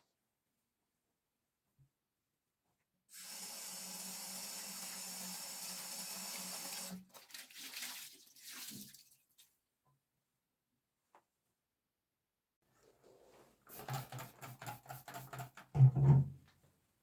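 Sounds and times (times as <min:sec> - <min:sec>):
water splashing: 0:07.0 - 0:09.4
tap water running into sink: 0:13.7 - 0:16.3.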